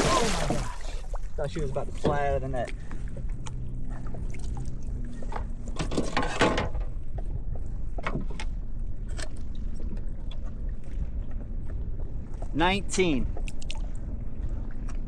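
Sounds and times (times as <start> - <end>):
water splashing and dripping: 0.0 - 2.1
knocks and rattles in a kayak: 0.0 - 13.8
low steady rumble: 0.0 - 15.0.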